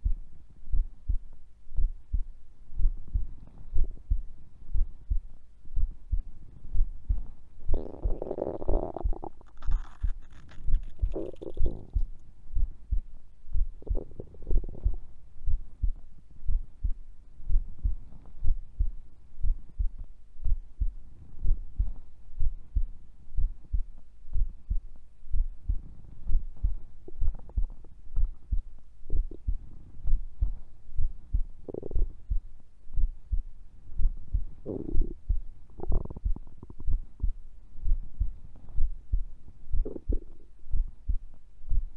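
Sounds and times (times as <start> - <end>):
heartbeat low double thumps: 0.0 - 41.9
stomach gurgles: 7.7 - 12.2, 13.8 - 15.0, 27.0 - 28.4, 29.1 - 29.4, 31.6 - 32.2, 34.6 - 35.2, 35.8 - 37.0, 39.8 - 40.5.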